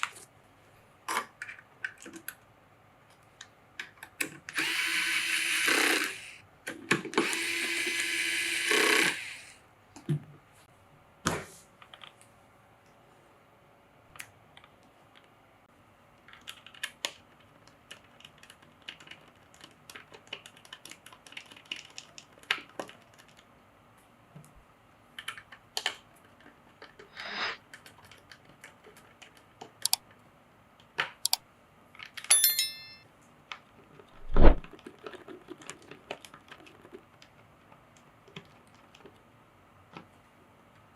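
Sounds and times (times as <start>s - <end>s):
electric screwdriver whirring: 4.5s - 6.4s, 7.2s - 9.5s
computer parts clicking and tapping: 27.7s - 30.2s.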